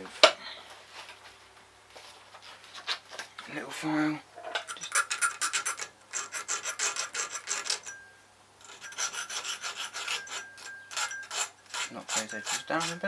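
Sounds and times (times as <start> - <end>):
hand file scraping a key: 4.6 - 13.0.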